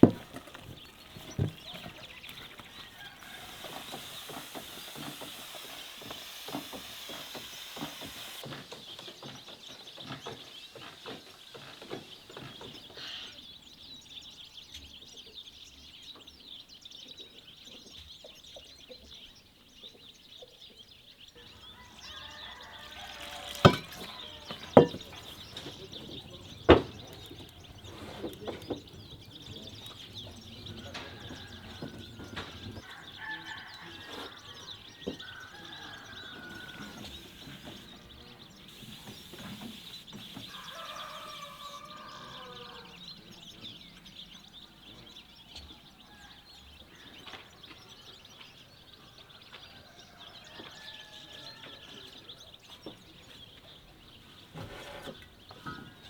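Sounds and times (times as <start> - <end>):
chickens clucking: 0.0 - 13.6, 17.2 - 46.1
sharp knocks: 23.5 - 27.5.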